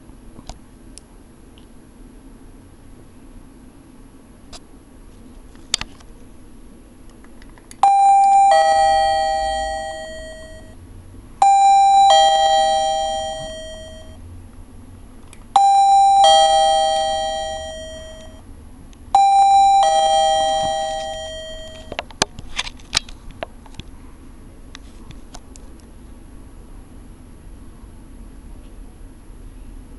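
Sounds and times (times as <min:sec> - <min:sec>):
doorbell chiming ding-dong: 0:07.8 - 0:10.8, 0:11.4 - 0:14.2, 0:15.6 - 0:18.4, 0:19.2 - 0:22.1.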